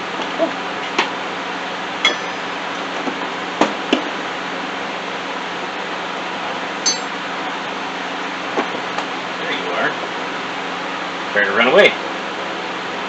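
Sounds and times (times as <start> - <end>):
metal bolts and nuts clinking: 6.8 - 7.2.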